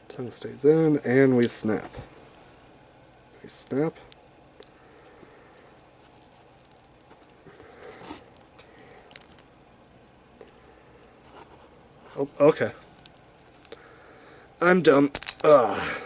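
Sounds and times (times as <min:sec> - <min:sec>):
plastic pieces rustling: 0:15.1 - 0:15.6.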